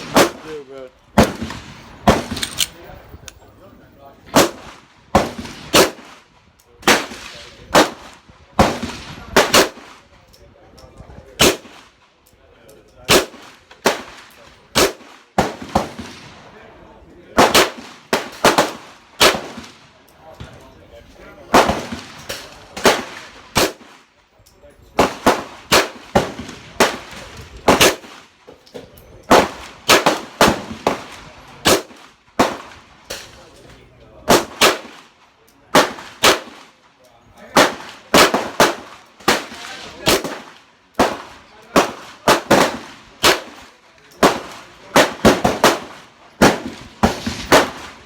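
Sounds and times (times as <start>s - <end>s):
pistol firing: 1.2s - 2.8s, 29.3s - 33.2s, 35.7s - 36.6s, 37.6s - 48.0s.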